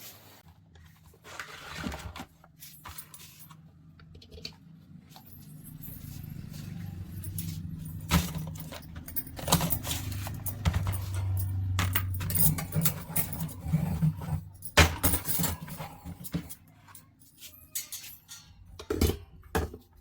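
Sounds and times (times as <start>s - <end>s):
metallic clinks and rattles: 5.1s - 19.0s.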